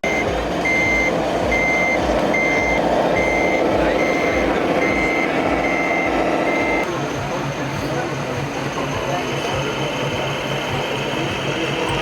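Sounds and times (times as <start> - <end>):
reversing beeper: 0.0 - 6.8.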